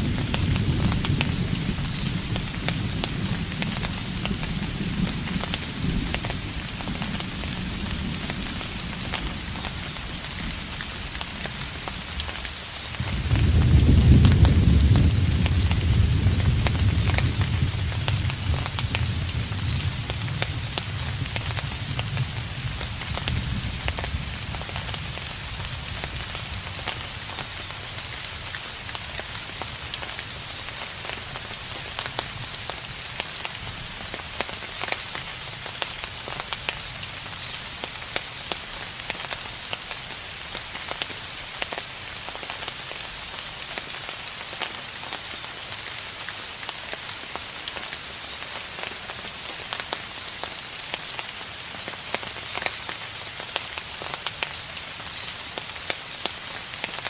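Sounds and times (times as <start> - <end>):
raindrops splashing: 0.0 - 57.0
steady rain: 0.0 - 57.0
distant thunder rumble: 13.0 - 26.9.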